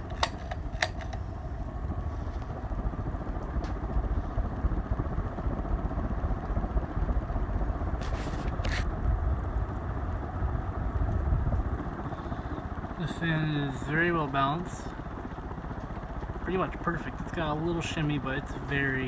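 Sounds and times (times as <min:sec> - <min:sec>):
short clicks: 0:00.0 - 0:01.2
ceiling fan whirring: 0:00.0 - 0:19.0.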